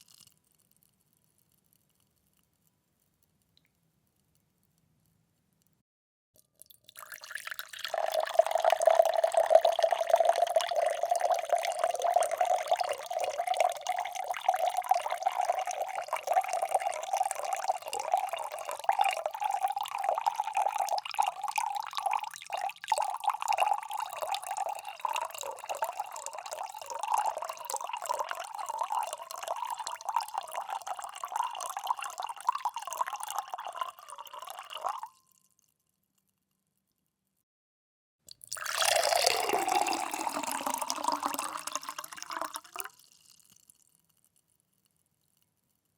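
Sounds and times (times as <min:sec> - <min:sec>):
water pouring into a glass: 0:06.6 - 0:35.2, 0:38.3 - 0:43.7.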